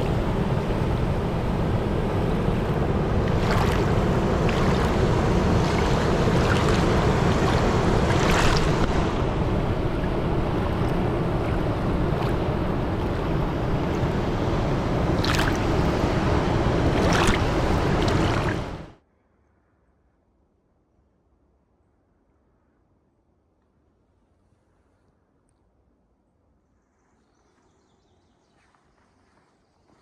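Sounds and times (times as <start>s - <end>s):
water splashes: 2.0s - 19.0s
creek rushing over rocks: 3.2s - 9.2s.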